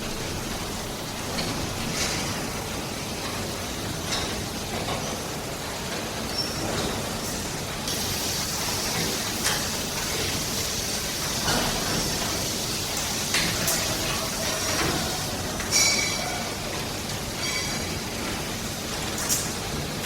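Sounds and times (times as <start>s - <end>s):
machinery hum: 0.0s - 4.1s
running water hiss: 7.9s - 16.1s.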